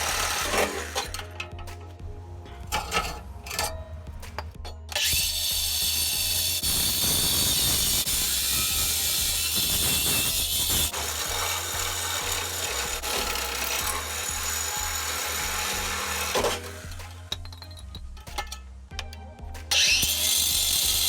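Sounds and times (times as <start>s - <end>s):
angle grinder cutting steel pipe: 0.0s - 1.6s, 2.5s - 17.4s, 19.7s - 21.0s.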